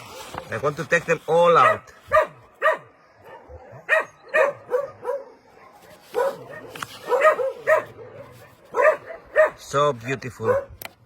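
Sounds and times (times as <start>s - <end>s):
dog barking: 1.6s - 9.8s, 10.4s - 10.8s.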